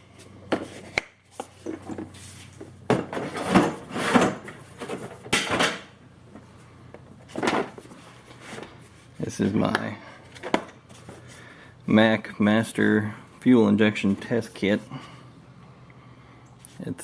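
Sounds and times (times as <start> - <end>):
metal tools clunking and rattling: 2.9 - 5.9.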